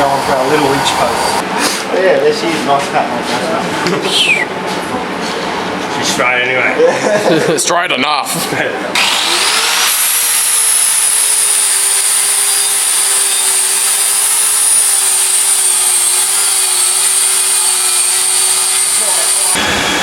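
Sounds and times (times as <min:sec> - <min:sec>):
electric power tool whining: 0:09.0 - 0:20.0.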